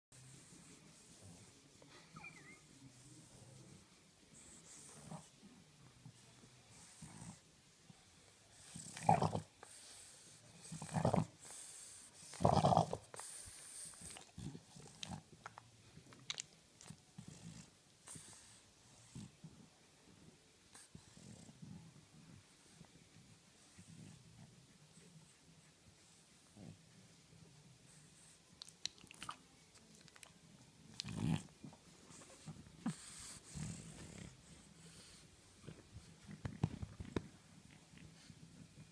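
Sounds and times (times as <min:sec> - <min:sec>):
dog grunting breaths: 0:31.0 - 0:36.4.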